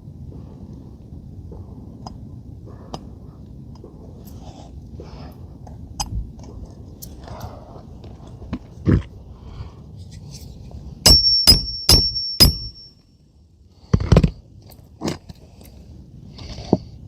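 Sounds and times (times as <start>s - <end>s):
hammer striking nail: 11.1s - 12.9s.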